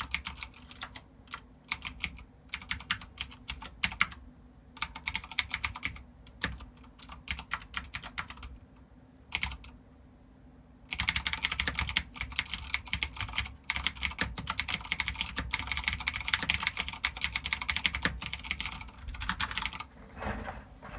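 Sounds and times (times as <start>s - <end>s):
typing on clicky mechanical keyboard: 0.0s - 4.2s, 4.8s - 8.6s, 9.3s - 9.8s, 10.9s - 19.9s.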